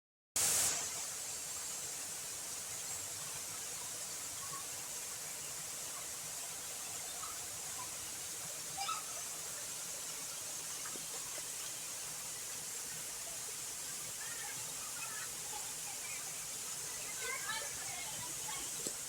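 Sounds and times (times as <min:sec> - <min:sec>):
high hiss of outdoor ambience: 0:00.4 - 0:19.0.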